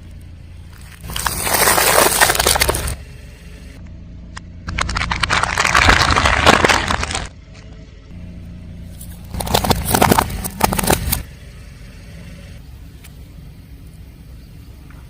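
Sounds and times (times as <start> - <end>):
car engine running: 0.0 - 15.0
tyre crushing brittle objects: 0.7 - 3.0, 4.7 - 7.3, 9.0 - 11.2.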